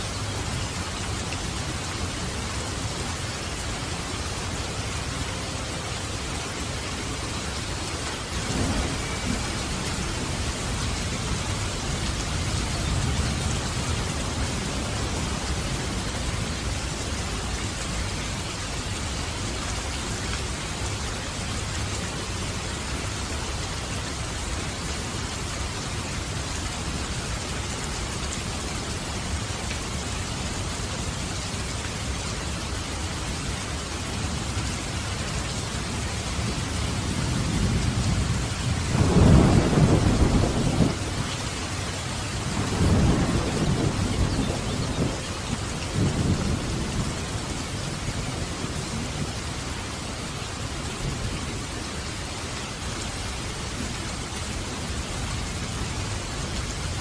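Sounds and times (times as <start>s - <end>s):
steady rain falling: 0.0s - 57.0s
thunder rumbling: 8.2s - 16.5s, 37.1s - 49.4s.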